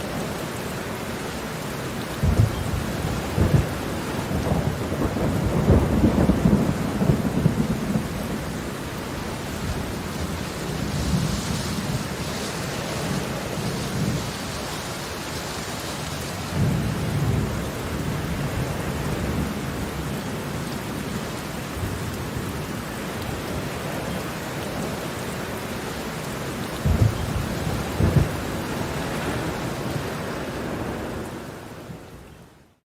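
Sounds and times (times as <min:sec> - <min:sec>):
heavy rain: 0:00.0 - 0:32.8
thunder claps: 0:02.2 - 0:08.5, 0:26.8 - 0:29.8
thunder rumbling: 0:02.2 - 0:21.0, 0:26.8 - 0:31.5.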